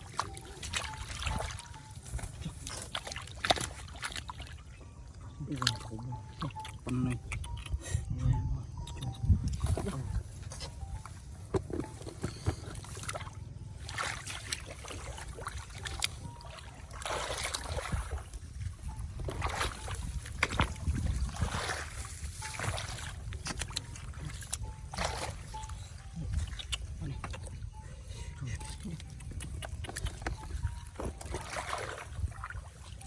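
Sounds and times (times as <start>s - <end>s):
water splashing and sloshing: 0.0s - 33.0s
steady low rumble: 4.6s - 31.0s.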